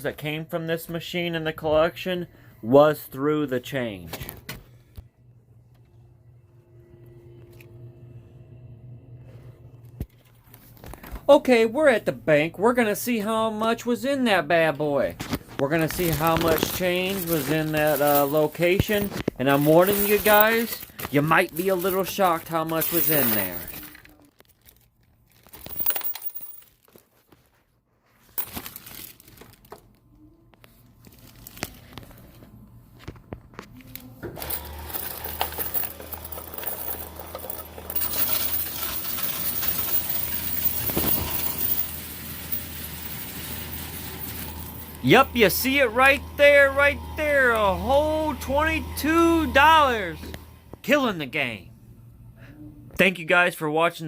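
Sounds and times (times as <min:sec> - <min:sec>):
faint low hum: 0:04.7 - 0:11.2
coins clinking and pouring: 0:15.8 - 0:24.1, 0:25.6 - 0:26.8, 0:34.4 - 0:45.7
rustling: 0:33.8 - 0:45.0.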